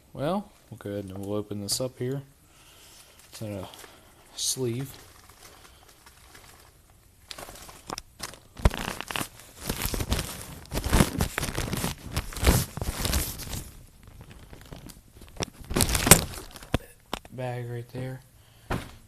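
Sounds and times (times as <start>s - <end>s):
plastic sleeve crinkling: 2.7s - 17.3s.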